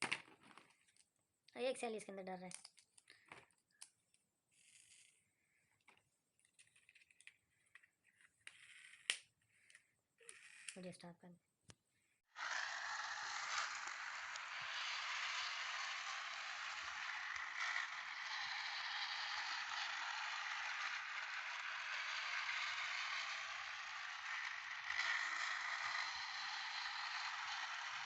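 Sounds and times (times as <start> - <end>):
toy train running on track: 12.3 - 28.0.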